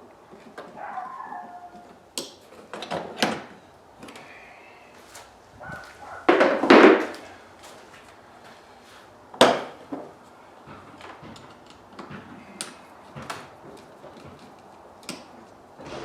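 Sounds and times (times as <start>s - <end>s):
loud scraping clatter: 15.8s - 16.0s.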